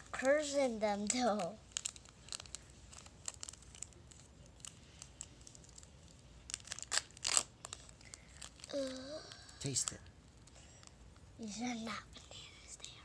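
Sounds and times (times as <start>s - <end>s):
plastic packaging crinkling: 0.1s - 11.0s
plastic tearing: 1.0s - 8.8s.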